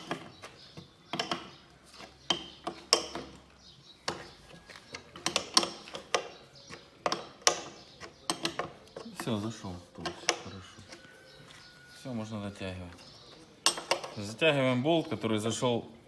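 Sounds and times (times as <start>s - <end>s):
wrench clicking and clanking on bolt: 1.1s - 9.4s, 13.6s - 14.4s.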